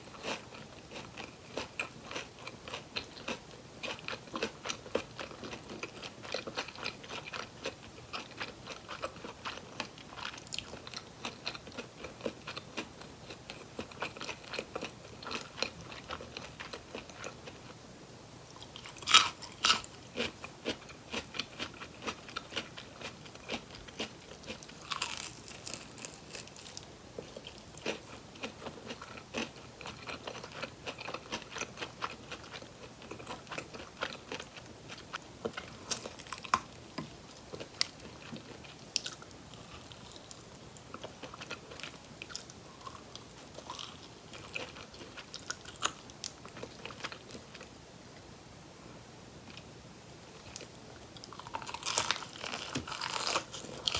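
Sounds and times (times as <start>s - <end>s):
crunchy chewing: 0.1s - 17.8s, 18.5s - 47.7s, 50.4s - 53.9s
loud crunching bite: 18.8s - 20.3s, 24.8s - 26.8s, 51.4s - 53.9s.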